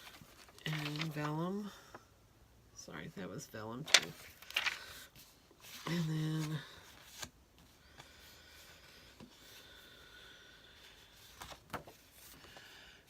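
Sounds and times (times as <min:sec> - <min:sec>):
paper rubbing and rustling: 0:00.0 - 0:01.3, 0:03.8 - 0:07.3
paper rustles: 0:00.0 - 0:01.4, 0:03.8 - 0:07.3, 0:11.2 - 0:12.8.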